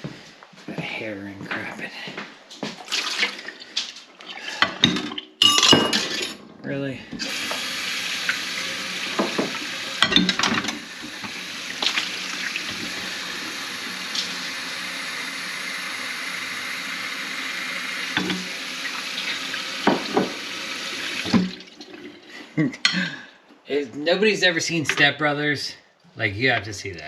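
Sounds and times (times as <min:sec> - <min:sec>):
tap running into sink: 0:07.2 - 0:14.5, 0:18.0 - 0:21.7.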